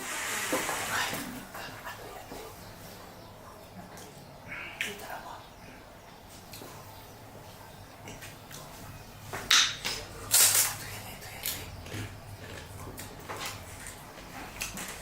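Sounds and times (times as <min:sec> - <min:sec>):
crunchy biting and chewing: 0:11.4 - 0:15.0.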